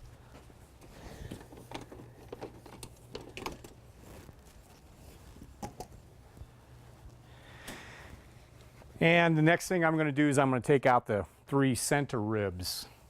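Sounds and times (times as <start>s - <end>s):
faint low hum: 0.0s - 11.6s.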